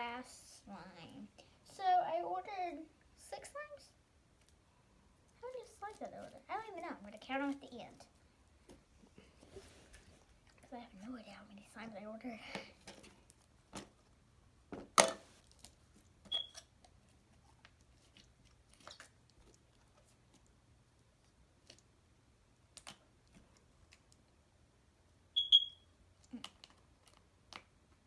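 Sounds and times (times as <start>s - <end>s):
plastic containers clicking and tapping: 14.8s - 15.2s
short high-pitched chirps: 25.4s - 25.8s.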